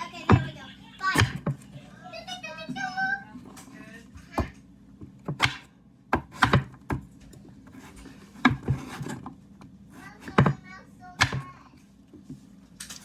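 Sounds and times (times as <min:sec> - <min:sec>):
knife chopping on cutting board: 0:00.1 - 0:01.6, 0:04.3 - 0:11.6.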